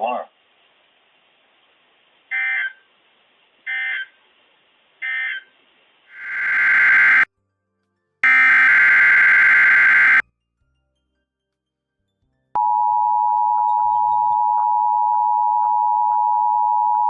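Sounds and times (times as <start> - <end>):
buzzy alert tone: 6.1 - 7.3, 8.2 - 10.2
warbling digital data bursts: 6.1 - 7.3, 8.2 - 10.2.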